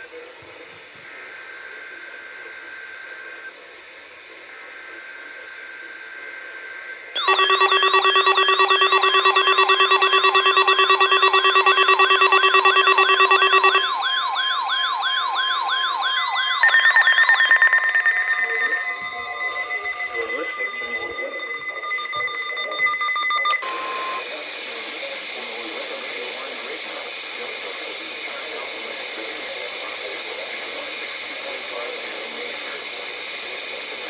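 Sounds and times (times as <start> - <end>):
electronic warble of rapid chirps: 7.2 - 23.4
faint steady tone: 7.2 - 24.3.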